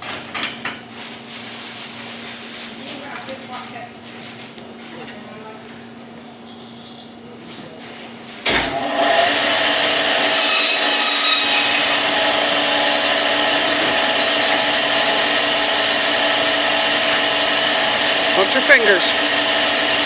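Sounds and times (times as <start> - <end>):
constant machine whine: 2.8 - 20.0
band saw running: 8.7 - 20.0.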